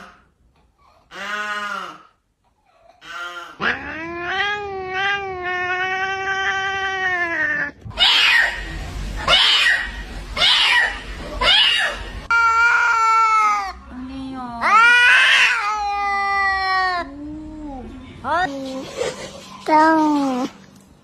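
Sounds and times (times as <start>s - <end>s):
cat yowling: 14.6s - 17.0s.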